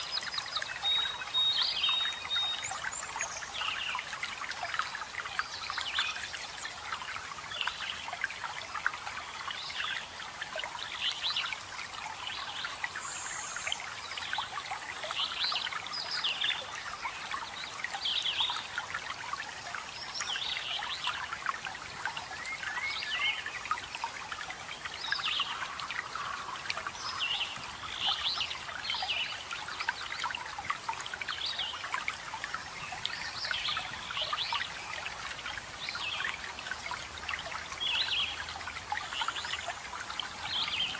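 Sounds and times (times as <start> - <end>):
forest birds chirping: 0.0 - 4.1, 22.2 - 24.2, 24.8 - 30.3
trickling water: 0.0 - 40.9.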